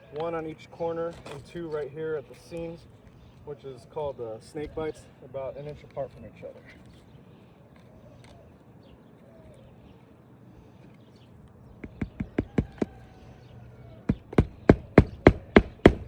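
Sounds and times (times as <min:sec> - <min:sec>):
hammer striking roofing nails: 0:11.8 - 0:13.0, 0:14.1 - 0:16.0.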